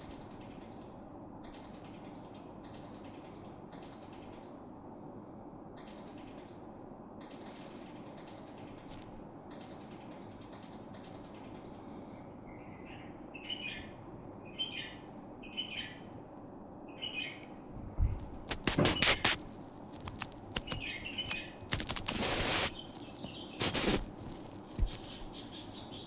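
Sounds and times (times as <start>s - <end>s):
steady background hiss: 0.0s - 26.0s
small bird chirping: 12.4s - 16.1s, 16.9s - 17.6s, 20.5s - 26.0s.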